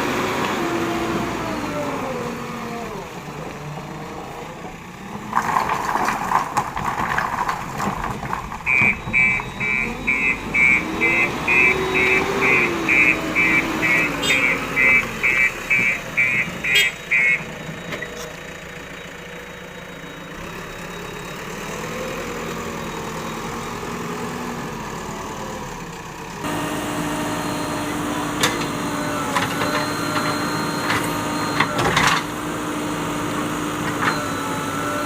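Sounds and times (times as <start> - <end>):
diesel engine running: 0.0 - 35.0
reversing alarm beeping: 8.6 - 18.1, 27.1 - 32.1, 34.0 - 35.0.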